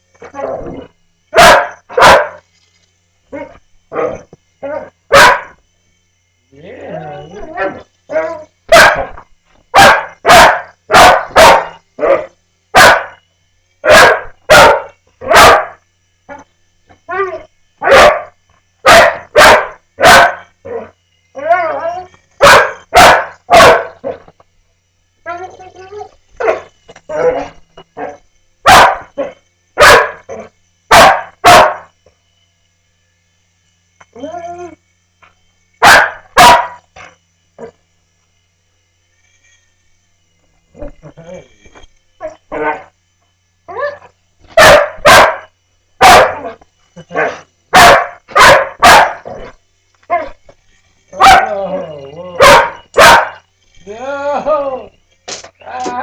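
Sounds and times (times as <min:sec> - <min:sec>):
dog barking: 0:01.4 - 0:02.4, 0:03.4 - 0:05.6, 0:07.6 - 0:09.2, 0:09.8 - 0:13.2, 0:13.9 - 0:15.8, 0:17.8 - 0:20.5, 0:22.4 - 0:24.2, 0:28.7 - 0:30.3, 0:30.9 - 0:31.9, 0:35.8 - 0:36.8, 0:44.6 - 0:46.5, 0:47.1 - 0:49.4, 0:51.2 - 0:51.5, 0:52.4 - 0:53.4.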